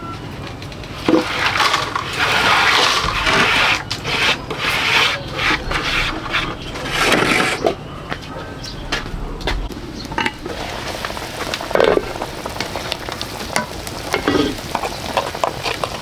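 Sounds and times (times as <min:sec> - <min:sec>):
rough scraping and rubbing: 0:00.9 - 0:12.9.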